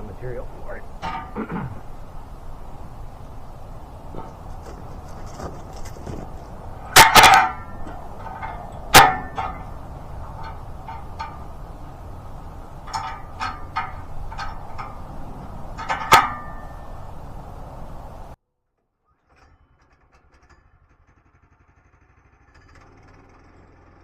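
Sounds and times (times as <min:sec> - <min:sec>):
log clanking on steel sawmill bed: 0:00.0 - 0:18.4.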